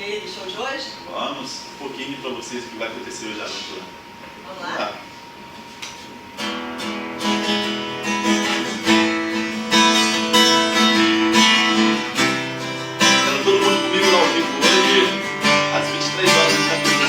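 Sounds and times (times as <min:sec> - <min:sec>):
acoustic guitar strumming: 0:06.3 - 0:17.0.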